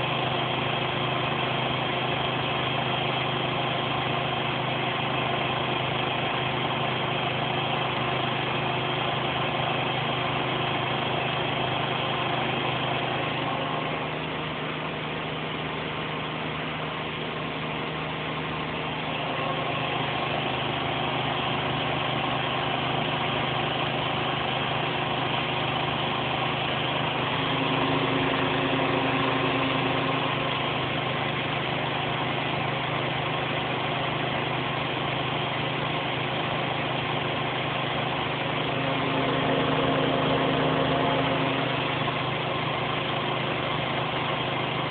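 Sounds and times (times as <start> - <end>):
washing machine spinning: 0.0 - 44.9.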